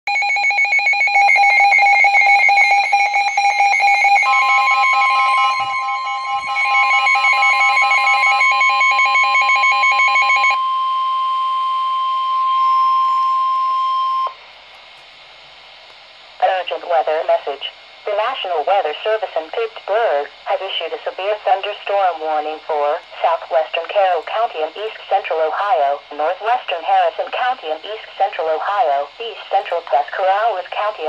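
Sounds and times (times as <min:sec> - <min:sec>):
steady alert tone: 0:03.4 - 0:08.5.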